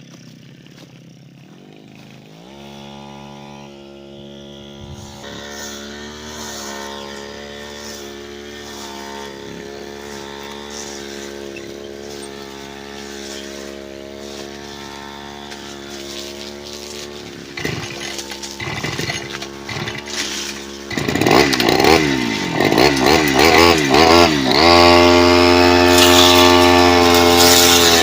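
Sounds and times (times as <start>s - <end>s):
brush cutter engine running: 0.0s - 28.0s.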